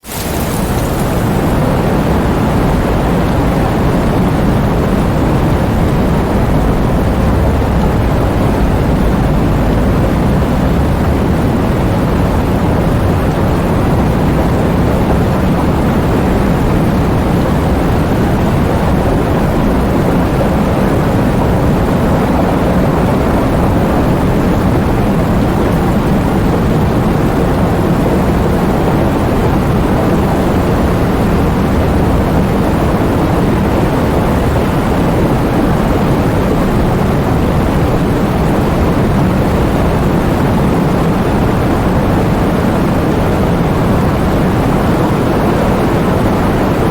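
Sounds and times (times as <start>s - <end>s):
heavy rain pouring: 0.0s - 46.9s
strong wind: 0.0s - 46.9s.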